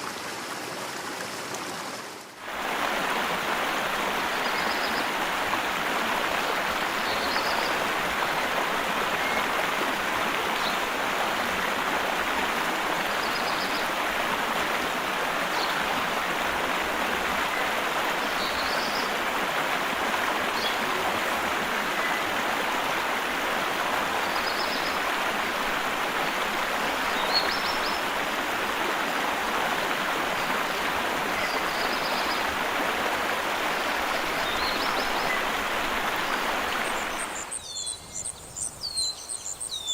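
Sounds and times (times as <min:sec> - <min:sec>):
stream rushing: 0:00.0 - 0:38.1
bird chirping: 0:37.0 - 0:39.9.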